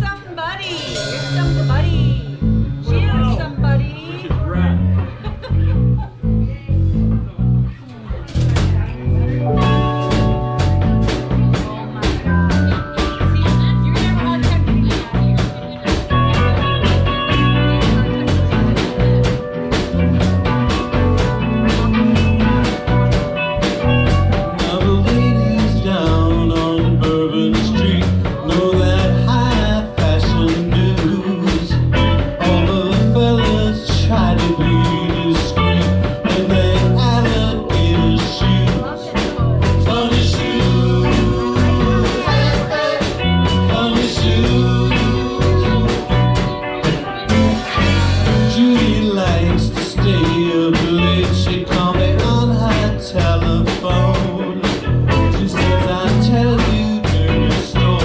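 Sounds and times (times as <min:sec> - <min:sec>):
blues band playing: 0:00.0 - 0:58.0
electric guitar: 0:00.8 - 0:58.0.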